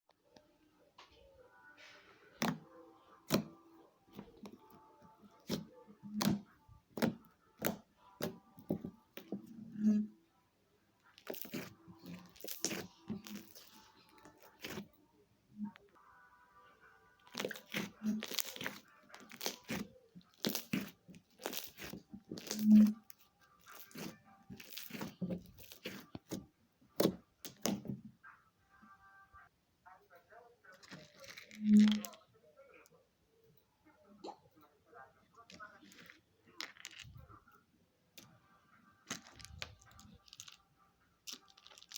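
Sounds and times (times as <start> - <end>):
slime crackling and tearing: 11.2 - 14.9, 17.2 - 26.4, 39.1 - 40.6, 41.3 - 41.9.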